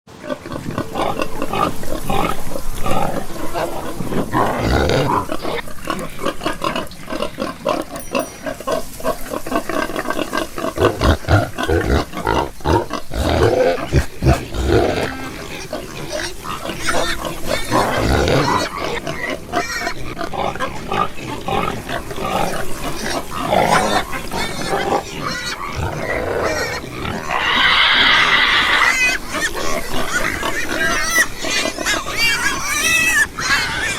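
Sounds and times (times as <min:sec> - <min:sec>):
pigs grunting: 0:00.1 - 0:33.9
pig squealing: 0:00.2 - 0:33.9.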